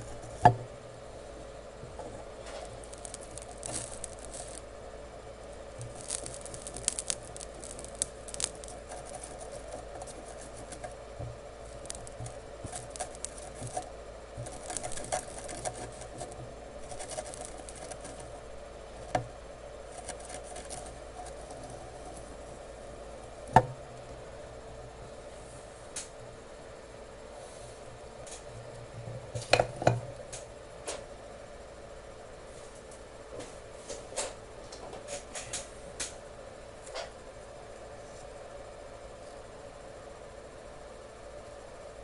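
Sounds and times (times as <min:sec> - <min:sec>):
soldering iron sizzling: 0:00.0 - 0:26.2
steady hum: 0:00.0 - 0:42.0.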